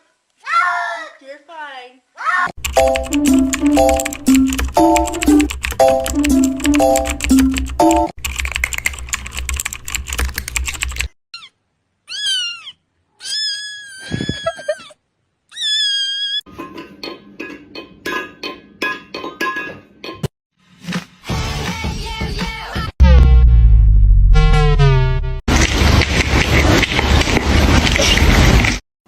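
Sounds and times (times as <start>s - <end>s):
computer keyboard typing: 2.6s - 11.2s
cat meowing: 12.1s - 14.8s.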